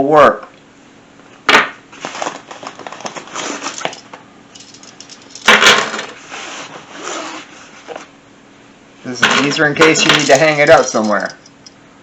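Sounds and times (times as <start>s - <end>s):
small accessories clicking and clinking: 3.6s - 5.5s, 9.9s - 11.8s.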